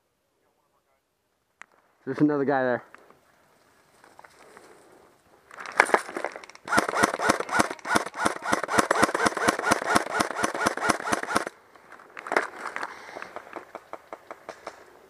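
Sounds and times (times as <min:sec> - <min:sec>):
airsoft rifle firing: 0:06.6 - 0:11.6.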